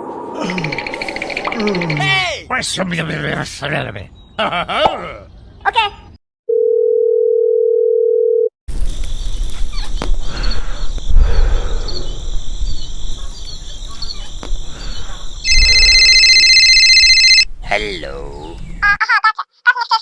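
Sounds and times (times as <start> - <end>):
high whine with chirps: 0.0 - 2.3.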